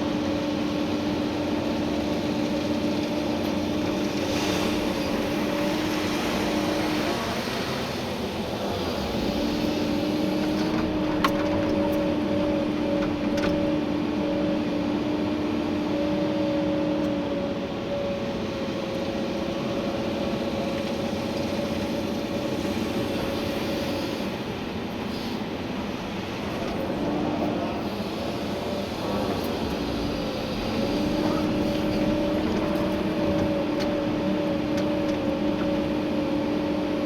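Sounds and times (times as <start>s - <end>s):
excavator engine drone: 0.0s - 37.0s
hydraulic whine tones: 26.3s - 37.0s.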